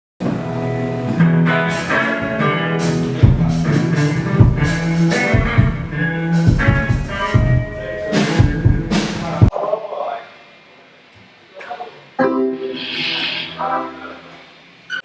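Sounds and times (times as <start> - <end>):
drum kit: 0.2 - 9.5
guitar-led band music: 0.3 - 9.5, 12.2 - 14.4.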